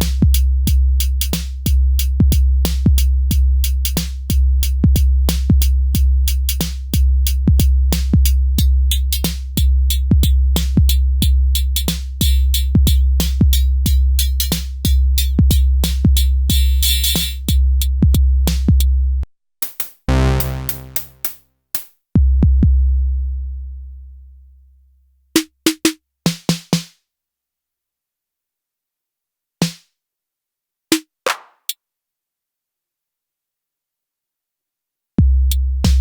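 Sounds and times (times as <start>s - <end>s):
long low kick drum: 0.0s - 14.1s, 17.5s - 18.9s, 22.2s - 23.0s, 35.2s - 36.0s
drum machine beat: 0.0s - 18.9s, 19.6s - 21.4s, 35.2s - 36.0s.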